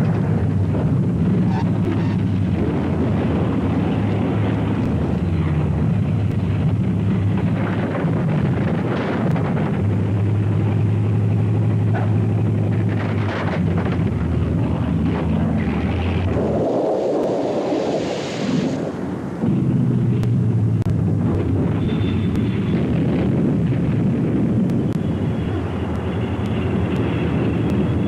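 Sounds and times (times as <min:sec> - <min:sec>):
propeller aircraft engines droning: 0:00.0 - 0:28.0
wind noise on microphone: 0:00.0 - 0:28.0.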